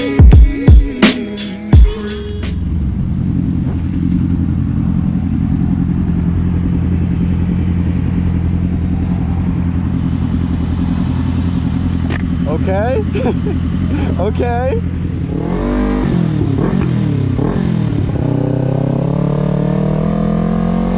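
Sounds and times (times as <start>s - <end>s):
hip-hop music: 0.0s - 2.7s
motorcycle engine running: 1.8s - 20.9s.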